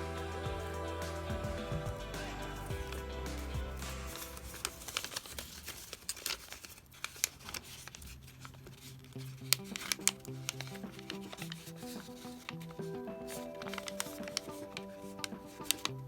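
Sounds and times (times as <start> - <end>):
soft background music: 0.0 - 5.3, 9.4 - 16.0
paper being folded and creased: 3.7 - 16.0.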